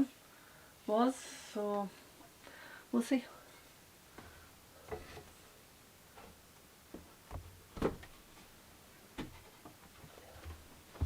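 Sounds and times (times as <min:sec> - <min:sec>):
wooden knocks and taps: 0:06.2 - 0:08.2, 0:09.2 - 0:11.0.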